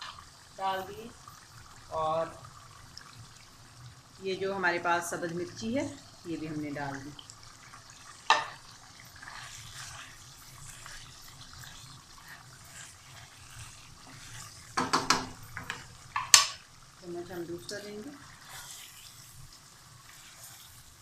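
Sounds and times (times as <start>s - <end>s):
chicken sizzling in hot oil: 0.0s - 21.0s
spoon knocking on pot: 14.8s - 16.6s.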